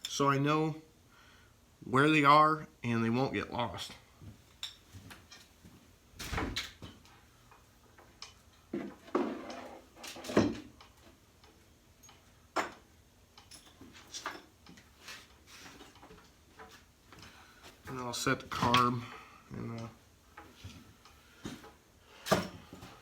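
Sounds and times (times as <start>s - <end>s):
knocks and clunks of parts handled: 6.2s - 19.1s, 20.3s - 23.0s.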